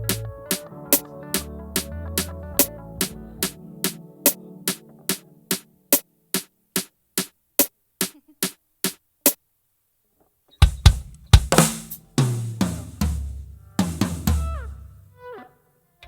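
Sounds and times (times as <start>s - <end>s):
acoustic drum kit played hard: 0.0s - 2.7s, 10.6s - 15.0s.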